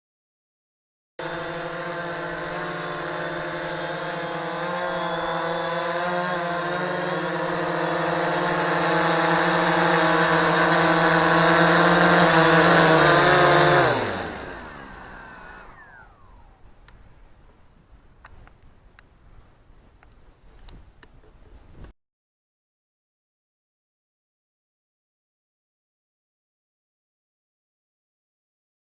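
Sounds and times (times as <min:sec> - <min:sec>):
drone propellers buzzing: 0:01.2 - 0:17.6.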